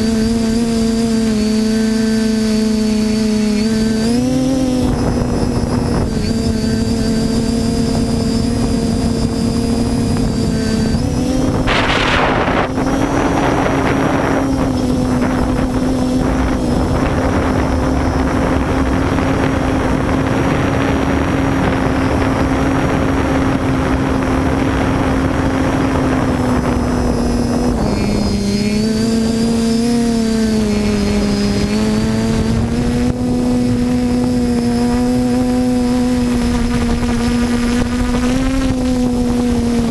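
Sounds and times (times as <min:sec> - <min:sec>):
quadcopter motors whining: 0:00.0 - 0:39.9
rush of air: 0:10.0 - 0:21.0.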